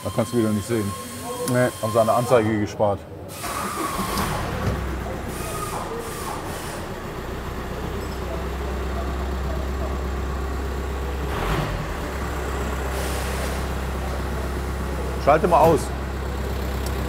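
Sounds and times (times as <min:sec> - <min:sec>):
engine thump: 0:03.4 - 0:10.0, 0:15.5 - 0:16.1
van engine idling: 0:03.4 - 0:17.0.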